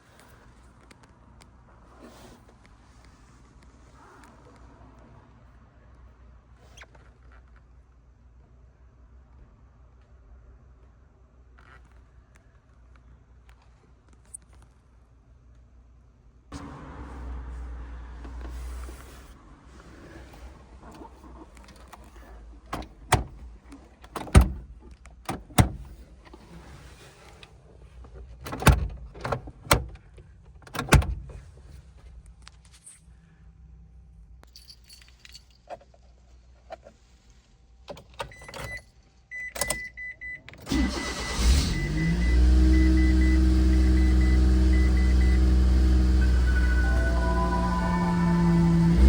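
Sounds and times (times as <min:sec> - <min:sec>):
car engine cranking and idling: 0:16.5 - 0:26.7, 0:40.5 - 0:49.0
keys jangling: 0:34.4 - 0:35.8
high warning beep: 0:41.7 - 0:49.0.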